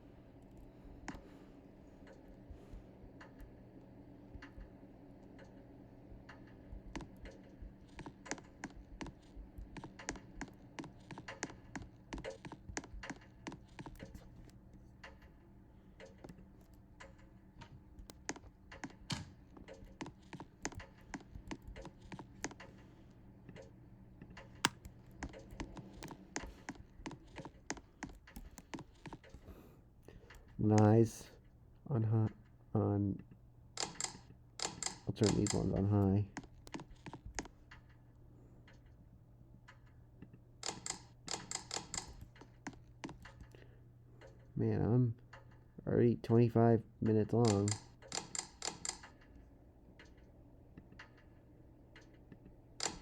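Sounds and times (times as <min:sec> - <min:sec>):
faint low hum: 0:00.0 - 0:53.0
keyboard typing clicks: 0:04.3 - 0:15.4, 0:16.0 - 0:29.5, 0:33.8 - 0:38.0, 0:39.7 - 0:44.4, 0:47.4 - 0:49.4, 0:51.9 - 0:53.0.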